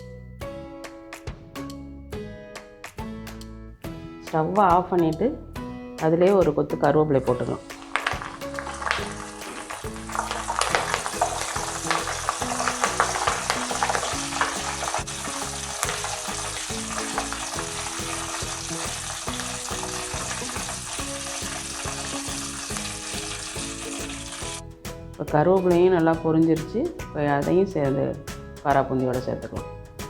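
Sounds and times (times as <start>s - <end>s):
leaves sizzling in hot oil: 7.3s - 24.6s.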